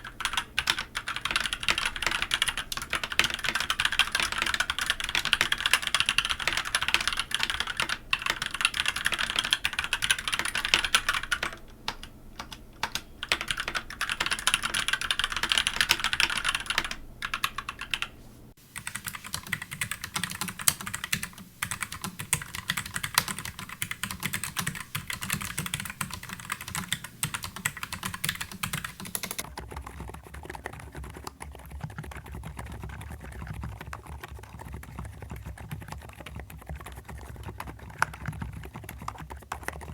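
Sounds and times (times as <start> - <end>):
mechanical keyboard typing: 0.0 - 18.1, 18.8 - 32.1.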